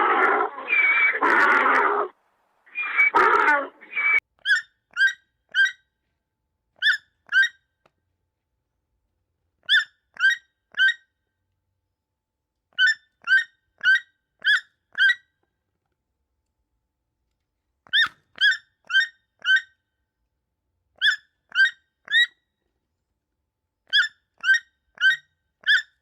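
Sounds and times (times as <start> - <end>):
rough animal call: 0.0 - 4.2
bird short sharp calls: 2.7 - 4.2.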